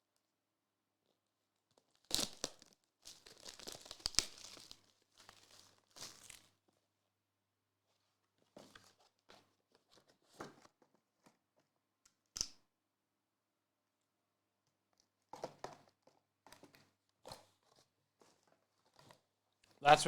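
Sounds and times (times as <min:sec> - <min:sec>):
card packaging crinkling and tearing: 0:02.0 - 0:06.5.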